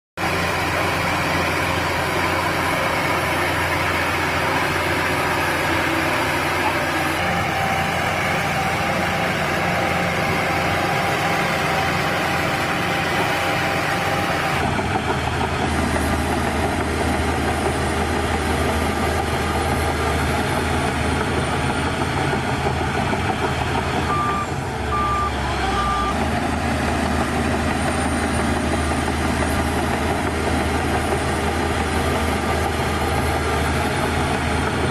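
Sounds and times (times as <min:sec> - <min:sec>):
bulldozer diesel engine running: 0:00.2 - 0:34.9
reversing alarm beeps: 0:24.1 - 0:26.2.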